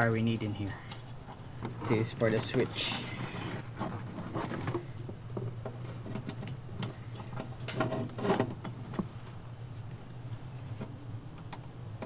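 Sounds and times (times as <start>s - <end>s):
steady low hum: 0.0s - 12.0s
wiring rustling: 0.8s - 9.1s.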